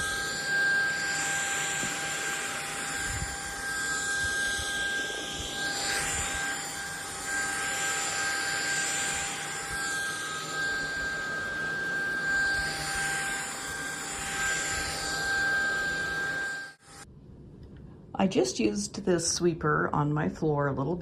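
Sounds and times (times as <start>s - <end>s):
vacuum cleaner motor whine: 0.0s - 17.1s.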